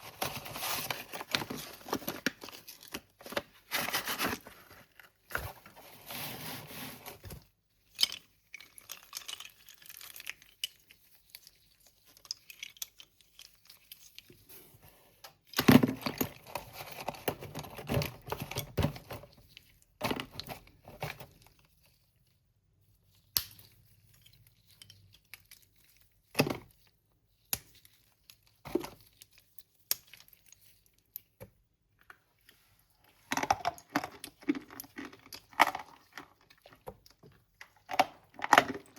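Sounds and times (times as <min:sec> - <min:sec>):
packaging crinkling and tearing: 0:00.0 - 0:06.1.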